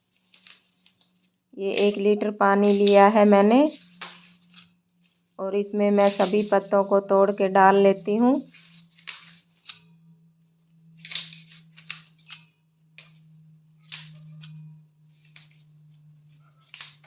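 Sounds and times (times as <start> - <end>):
leaves tearing: 0.0 - 4.8, 5.9 - 6.8, 8.5 - 9.8, 11.0 - 13.2, 13.8 - 17.0.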